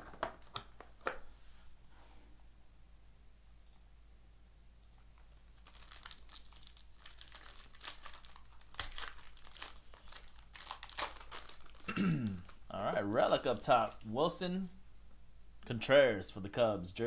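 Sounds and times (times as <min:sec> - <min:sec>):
plastic wrapper tearing and crinkling: 0:05.2 - 0:14.1.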